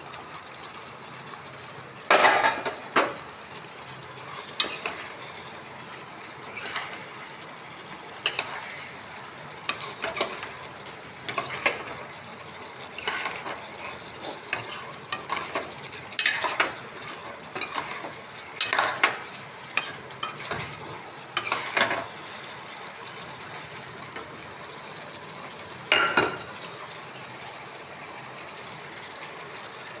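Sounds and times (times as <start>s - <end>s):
food sizzling in a pan: 0.0s - 30.0s
spatula scraping and clinking pan: 4.2s - 5.4s, 6.5s - 7.1s, 12.9s - 20.8s, 21.4s - 22.2s.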